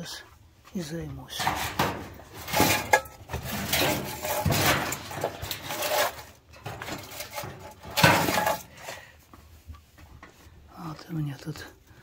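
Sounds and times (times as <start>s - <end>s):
objects rustling and knocking: 0.3s - 10.6s
loud clatter: 1.4s - 8.7s.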